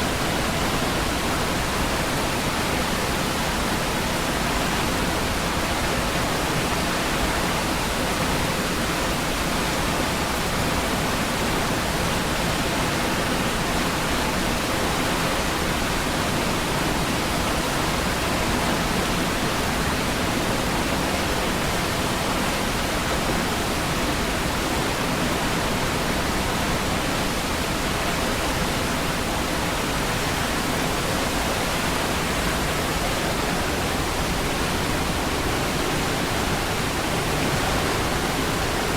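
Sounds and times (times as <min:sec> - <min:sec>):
waterfall rushing: 0:19.3 - 0:38.9.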